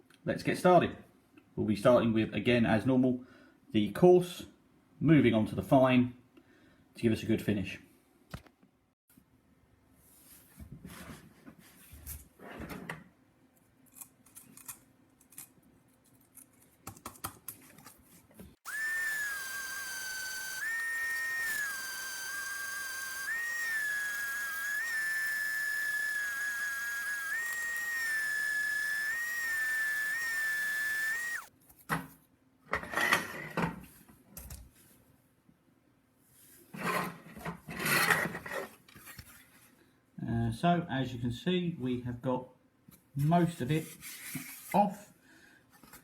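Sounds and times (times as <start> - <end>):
electric sander whining: 18.6 - 31.5.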